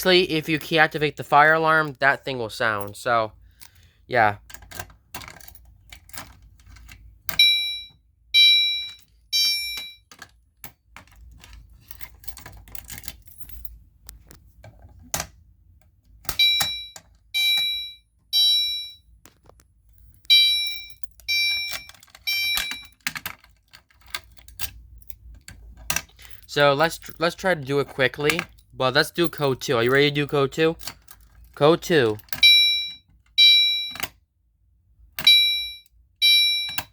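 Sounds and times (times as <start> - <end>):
fire alarm chime tones: 7.4 - 10.0, 16.4 - 19.0, 20.3 - 23.0, 32.4 - 34.1, 35.2 - 36.9.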